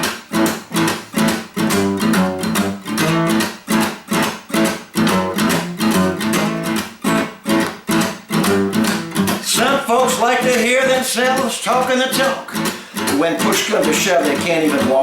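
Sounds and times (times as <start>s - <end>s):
acoustic guitar strummed blues rhythm: 0.0s - 15.0s.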